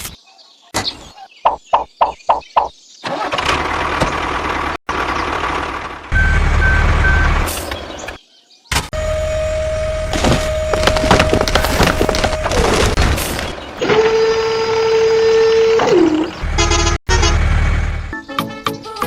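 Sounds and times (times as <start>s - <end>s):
vehicle engine running: 3.4s - 8.0s, 16.4s - 18.2s
clatter and knocks: 10.2s - 13.5s.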